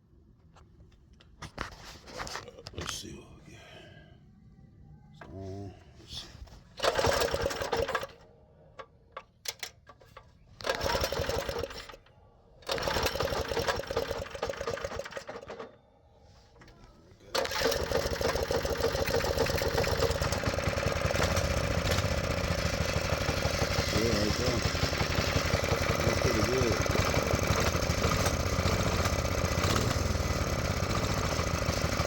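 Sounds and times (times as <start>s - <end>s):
small engine starting and running: 6.8s - 9.8s, 10.6s - 15.8s, 17.3s - 32.0s.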